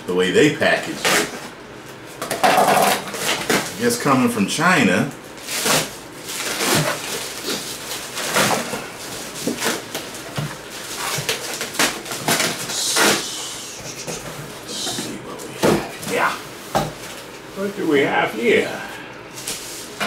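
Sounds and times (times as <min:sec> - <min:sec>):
packaging rustling and crinkling: 0:05.4 - 0:13.2.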